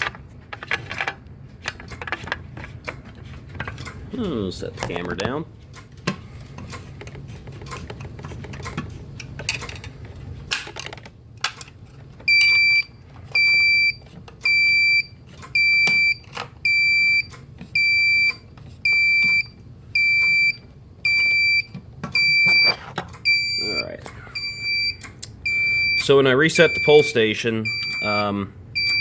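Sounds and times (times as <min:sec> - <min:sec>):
clicks and knocks of alarm handling: 0:04.7 - 0:23.6
fire alarm panel beeping: 0:12.2 - 0:29.0.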